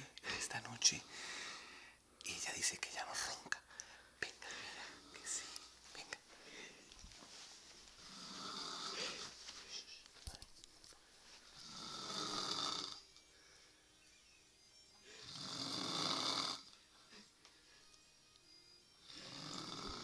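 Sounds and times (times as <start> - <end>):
quiet breathing: 0.0 - 14.1, 15.0 - 15.8, 16.5 - 18.2, 19.0 - 20.0
woman snoring: 8.0 - 9.4, 11.6 - 13.2, 15.2 - 16.7, 19.0 - 20.0.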